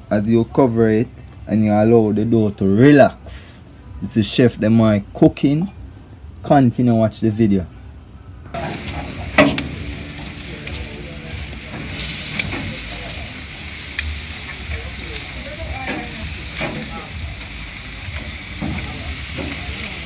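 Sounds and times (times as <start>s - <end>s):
food sizzling: 8.6s - 20.0s
sharp pops: 8.6s - 20.0s.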